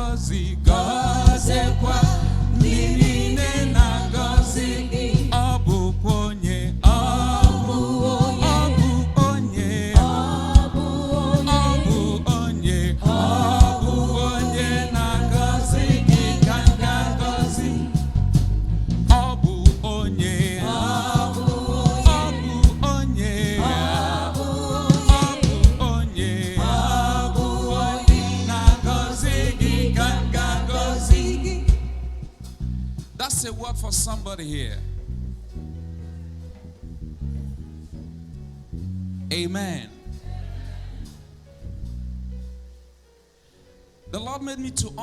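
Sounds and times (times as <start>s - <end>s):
several voices singing: 0.0s - 32.6s, 39.6s - 41.3s
band with drums and bass: 0.0s - 35.2s.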